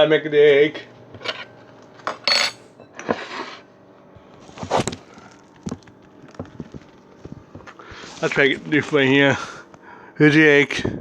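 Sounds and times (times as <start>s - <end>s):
dishes and cutlery clinking: 1.2s - 3.1s
dishes scraping: 1.2s - 3.6s.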